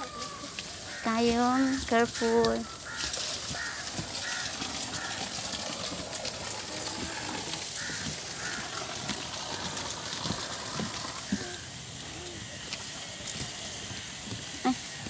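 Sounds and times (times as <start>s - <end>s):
birds calling harshly: 0.0s - 5.6s, 7.1s - 9.7s.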